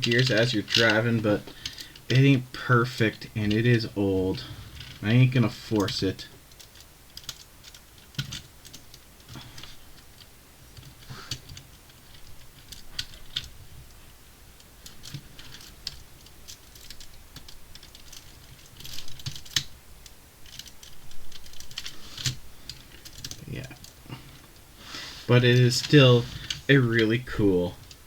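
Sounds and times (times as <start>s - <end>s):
plastic bricks clicking and rattling: 0.0s - 2.1s, 14.8s - 19.8s, 20.4s - 24.0s.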